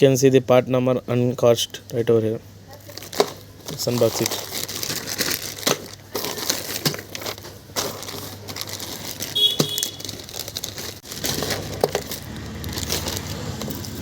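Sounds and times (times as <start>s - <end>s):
packaging crinkling and rustling: 2.7s - 14.0s.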